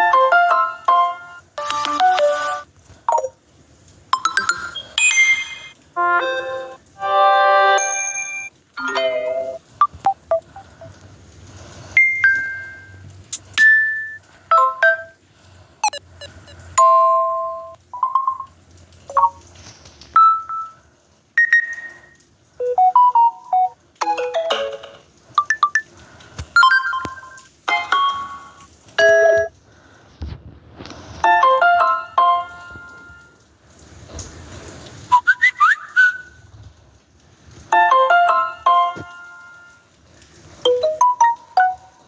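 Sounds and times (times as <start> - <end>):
phone notification tones: 0.1 - 3.4, 4.2 - 10.9, 15.8 - 18.5, 22.6 - 24.5, 25.4 - 25.8.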